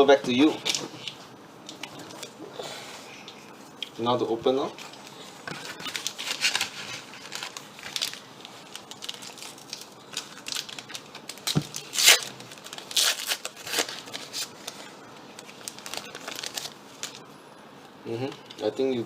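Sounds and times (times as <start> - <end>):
foil wrapper tearing and crinkling: 5.6 - 14.7, 15.4 - 17.2.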